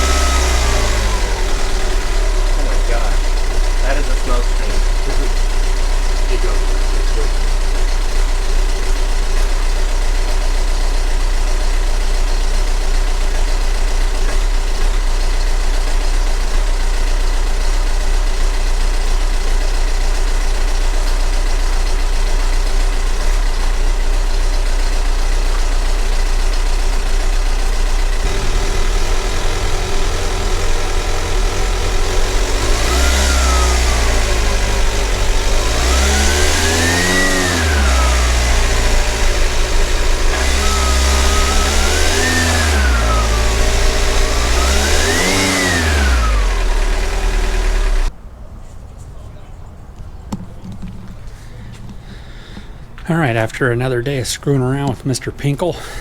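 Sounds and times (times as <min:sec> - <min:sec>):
diesel engine idling and revving: 0:00.0 - 0:48.2, 0:50.3 - 0:56.0.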